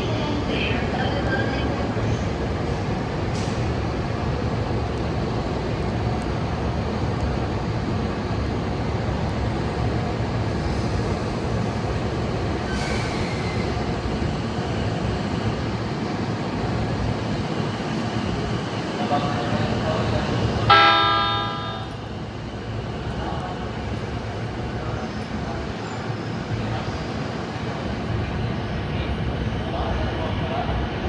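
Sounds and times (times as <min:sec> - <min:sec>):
electric train rumbling: 0:00.0 - 0:31.0
burst of hiss: 0:12.6 - 0:13.8.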